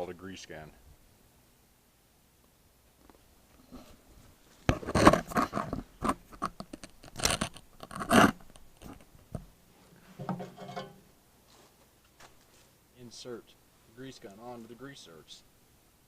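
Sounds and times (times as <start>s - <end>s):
grease gun scraping and clattering: 4.7s - 9.1s, 10.0s - 11.0s.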